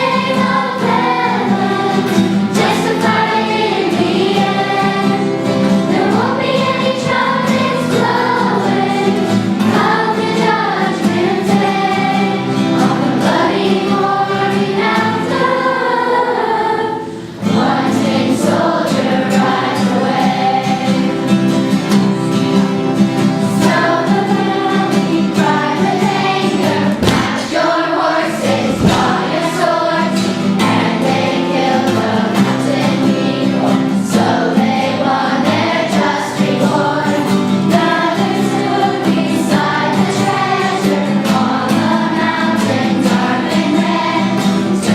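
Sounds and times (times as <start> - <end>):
choir of students singing: 0.0 - 44.9.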